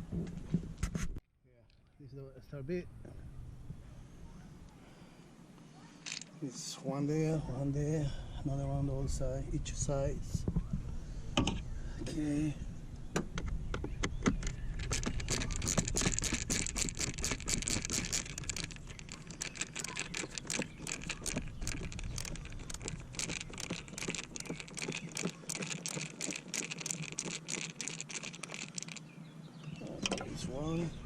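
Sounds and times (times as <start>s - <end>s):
hand tools clicking and rattling: 6.0s - 6.4s, 13.8s - 29.1s.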